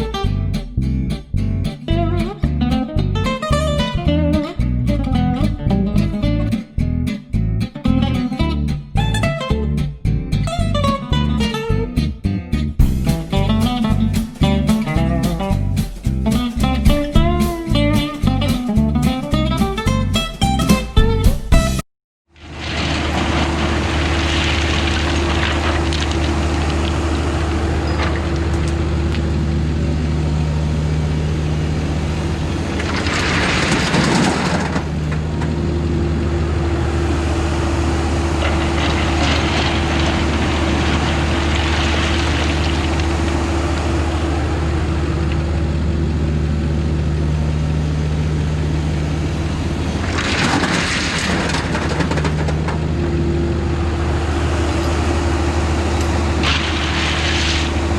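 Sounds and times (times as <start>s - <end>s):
excavator diesel engine running: 22.4s - 57.9s.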